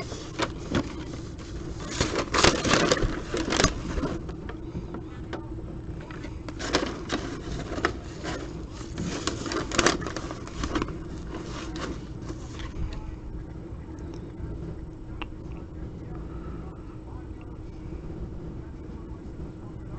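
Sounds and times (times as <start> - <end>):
cards and packaging rustling: 0.0 - 4.6, 6.1 - 12.8
steady low hum: 0.0 - 19.9.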